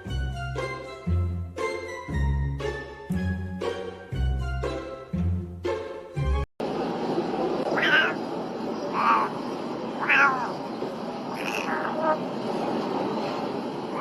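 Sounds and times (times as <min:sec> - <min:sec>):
steady background noise: 0:06.6 - 0:14.0
cat meowing: 0:07.7 - 0:08.2, 0:08.9 - 0:09.4, 0:10.0 - 0:10.7, 0:11.3 - 0:12.3.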